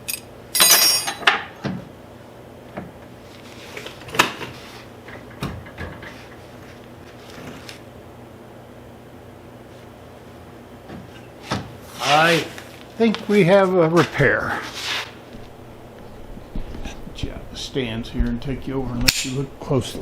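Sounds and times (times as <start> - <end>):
metal tools clinking and clattering: 0.0 - 1.4
steady low hum: 0.0 - 20.0.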